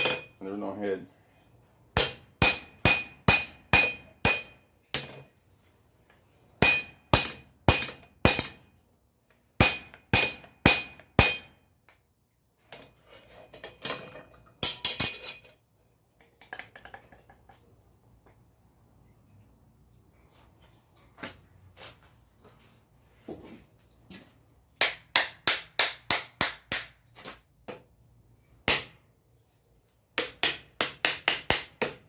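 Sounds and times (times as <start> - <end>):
hammer striking metal: 0.0 - 0.4, 2.0 - 5.2, 6.6 - 8.7, 9.6 - 11.6, 24.8 - 27.0, 28.7 - 29.0.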